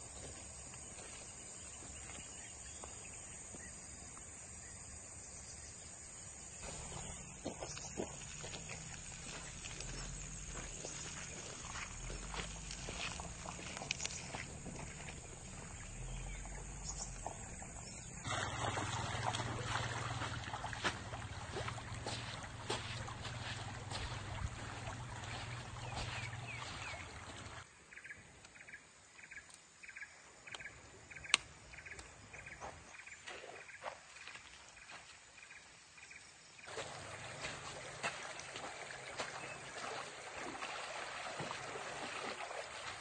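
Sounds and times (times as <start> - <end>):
flowing stream water: 6.6 - 27.7, 36.6 - 43.0.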